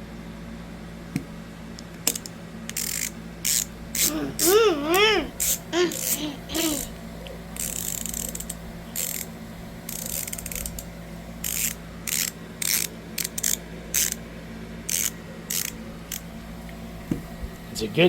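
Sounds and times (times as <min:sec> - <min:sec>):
ratcheting screwdriver clicking: 0:02.1 - 0:04.6, 0:05.4 - 0:06.9, 0:07.6 - 0:09.3, 0:09.9 - 0:14.2, 0:14.9 - 0:16.3.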